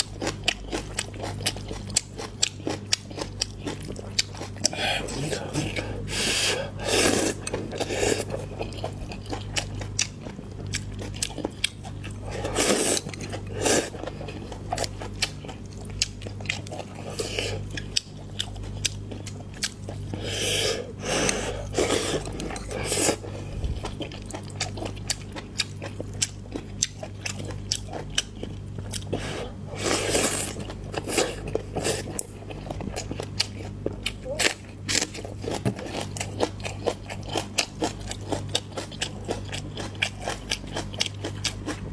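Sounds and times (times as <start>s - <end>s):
chewing and crunching: 0.0s - 41.9s
steady low hum: 0.0s - 41.9s.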